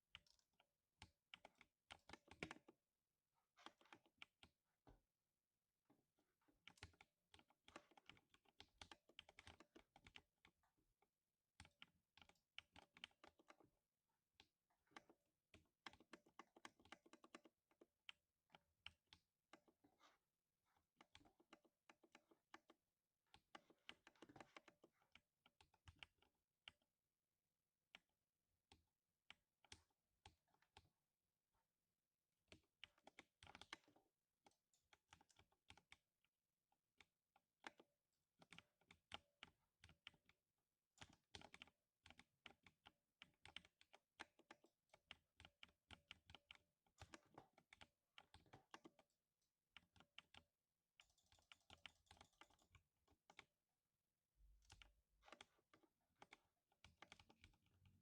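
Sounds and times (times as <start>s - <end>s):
mechanical keyboard typing: 32.5s - 36.0s, 41.0s - 53.5s, 54.4s - 58.0s.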